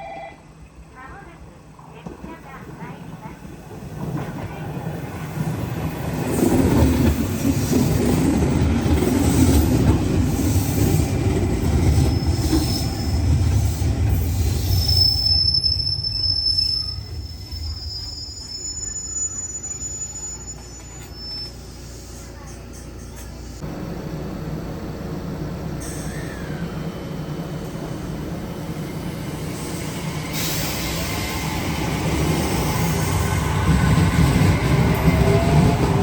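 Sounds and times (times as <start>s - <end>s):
train rumbling on track: 0.0s - 36.0s
wheels squealing on rails: 5.5s - 23.6s, 25.8s - 36.0s.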